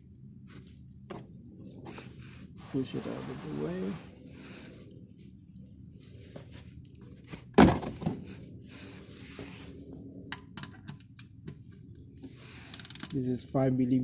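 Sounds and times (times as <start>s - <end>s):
loud thunk: 7.6s - 8.2s
tools clicking and scraping: 12.6s - 13.2s.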